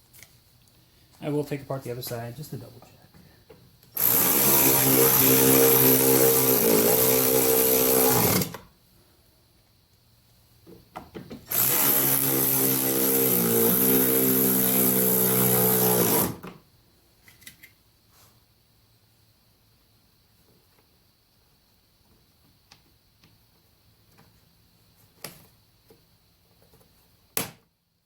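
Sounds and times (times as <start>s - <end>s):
cordless drill motor whine: 4.0s - 8.6s, 11.5s - 16.4s.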